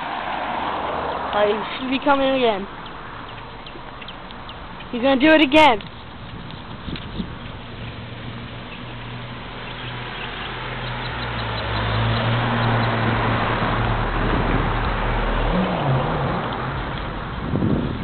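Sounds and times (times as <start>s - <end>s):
vehicle driving past: 0.0s - 2.1s, 7.4s - 18.0s.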